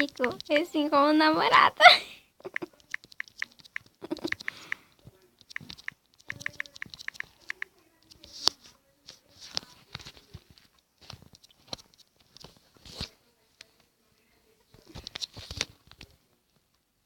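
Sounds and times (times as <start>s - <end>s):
phone keyboard typing clicks: 0.0s - 0.5s, 2.5s - 8.2s.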